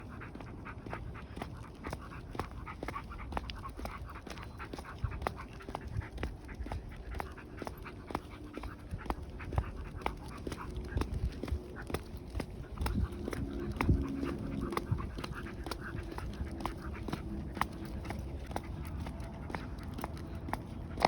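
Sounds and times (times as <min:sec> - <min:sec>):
dog panting: 0:00.0 - 0:21.0.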